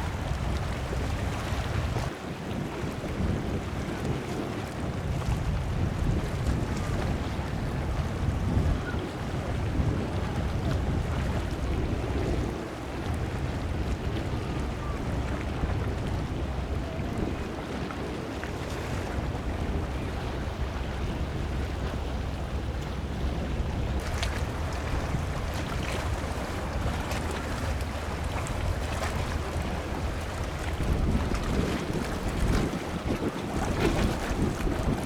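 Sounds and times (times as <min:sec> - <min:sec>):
rushing wind: 0:00.0 - 0:35.0
sea surf: 0:00.0 - 0:35.0
small crackling splashes: 0:24.0 - 0:32.7.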